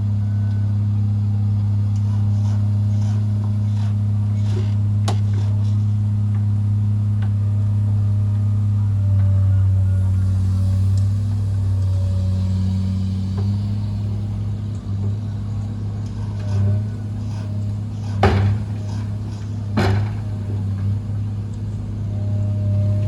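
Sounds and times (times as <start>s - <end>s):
heavy machinery engine humming: 0.0s - 23.0s
sharp knocks: 18.1s - 19.1s, 19.7s - 20.6s.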